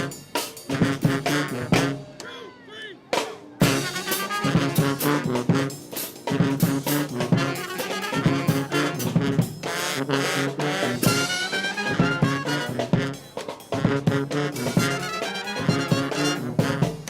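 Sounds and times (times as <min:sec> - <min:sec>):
steady drum beat: 0:00.0 - 0:02.4, 0:03.2 - 0:17.0
brass band playing: 0:00.0 - 0:02.5, 0:03.1 - 0:17.0.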